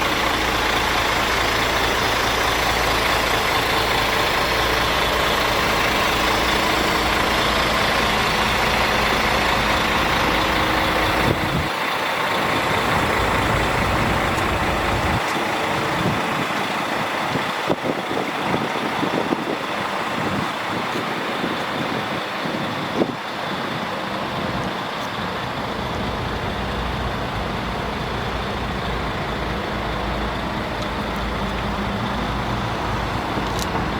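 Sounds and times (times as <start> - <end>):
diesel truck engine rumbling: 0.0 - 33.9
higher mechanical hum: 0.0 - 33.9.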